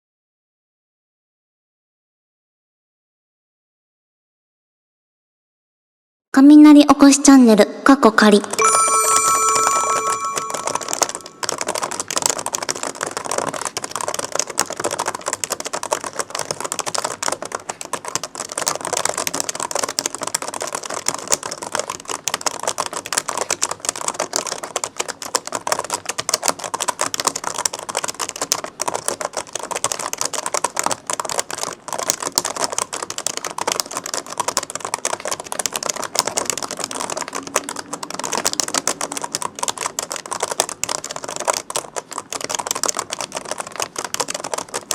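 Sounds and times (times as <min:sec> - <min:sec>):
fast typing on laptop keyboard: 0:08.2 - 0:44.9.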